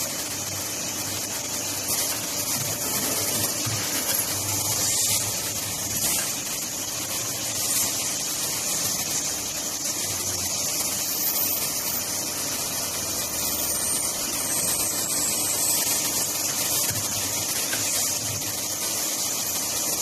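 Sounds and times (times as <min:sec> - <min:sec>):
cutting machine hissing: 0:00.0 - 0:20.0.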